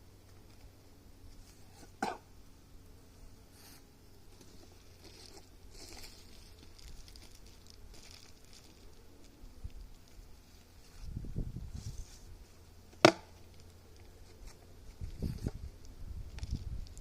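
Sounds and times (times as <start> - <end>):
low steady hum: 0.0 - 17.0
rustling and scraping of hive parts: 0.0 - 17.0.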